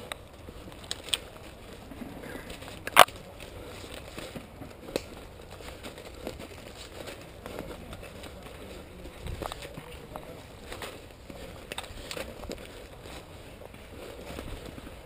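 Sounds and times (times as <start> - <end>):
twig cracking: 2.8 - 3.3.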